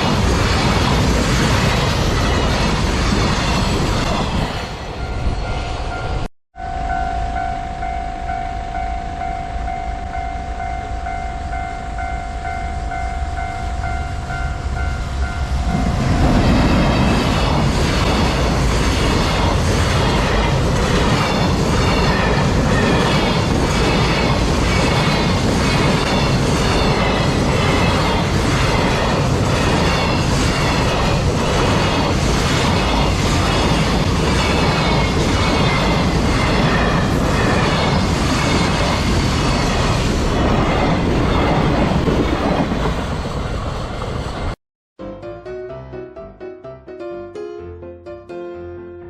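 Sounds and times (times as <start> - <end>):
level crossing alarm ringing: 5.0 - 16.2
train wheels clacking: 14.8 - 41.8.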